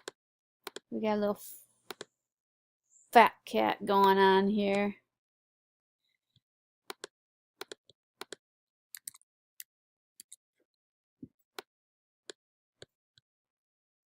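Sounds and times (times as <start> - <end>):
computer mouse clicks: 1.9 - 2.1, 6.9 - 9.2.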